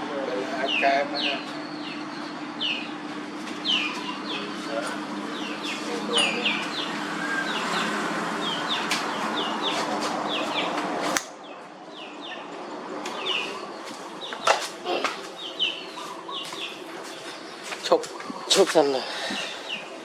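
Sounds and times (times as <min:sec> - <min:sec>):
small bird chirping: 0:03.6 - 0:10.8, 0:13.1 - 0:19.9.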